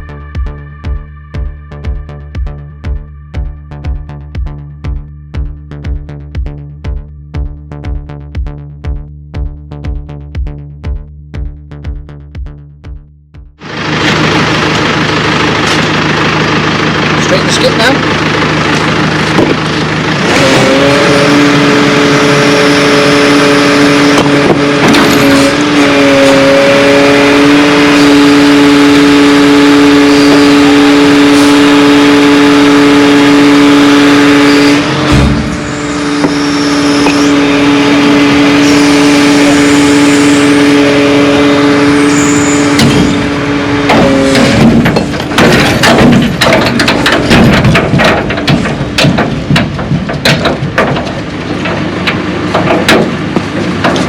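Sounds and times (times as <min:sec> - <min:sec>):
diesel engine droning: 0:00.0 - 0:54.0
clanking and knocking: 0:18.6 - 0:21.0, 0:24.1 - 0:26.6, 0:35.0 - 0:37.4, 0:42.7 - 0:54.0.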